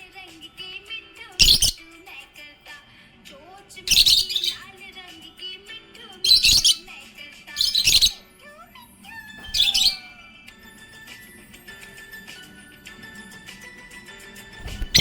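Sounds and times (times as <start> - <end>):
parrot harsh chirps: 1.4 - 1.9, 3.9 - 4.7, 6.2 - 8.2, 9.4 - 10.2, 14.6 - 15.0
parrot soft twittering: 1.4 - 1.9, 3.9 - 4.7, 6.3 - 6.9, 7.5 - 8.2, 9.4 - 10.2, 14.6 - 15.0.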